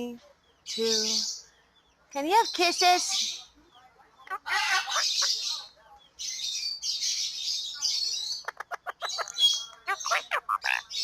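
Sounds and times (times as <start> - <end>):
parakeet chattering: 4.3 - 11.0.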